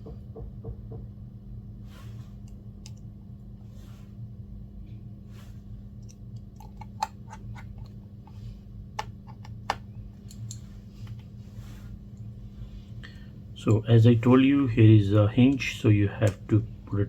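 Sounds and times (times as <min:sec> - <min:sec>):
low electrical hum: 0:00.0 - 0:17.0
tools clicking and tapping: 0:06.0 - 0:08.4, 0:09.0 - 0:11.2.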